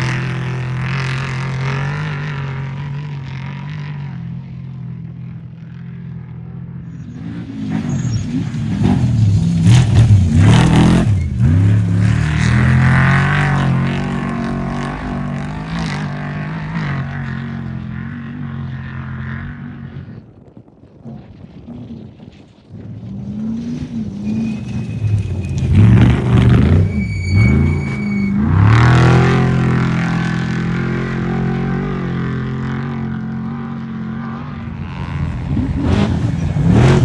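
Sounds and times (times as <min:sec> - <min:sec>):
truck engine revving past: 0:07.0 - 0:19.9, 0:22.8 - 0:37.0.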